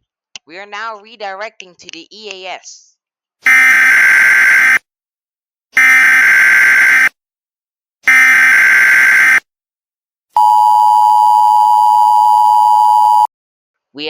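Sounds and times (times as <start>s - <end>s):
two-tone attention signal: 10.4s - 13.3s.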